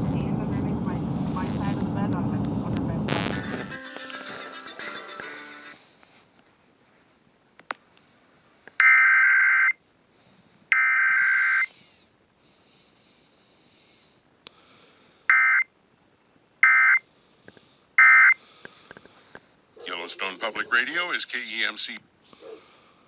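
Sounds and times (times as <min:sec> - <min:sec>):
faint radio hiss: 0:00.0 - 0:08.8, 0:17.0 - 0:23.0.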